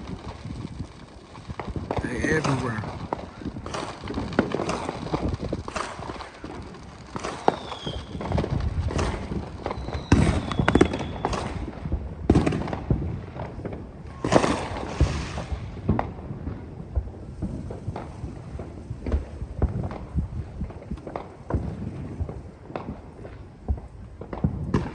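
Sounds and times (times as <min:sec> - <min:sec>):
firework whistles: 0:00.0 - 0:11.7, 0:14.1 - 0:15.8
fireworks bangs and pops: 0:00.0 - 0:24.9.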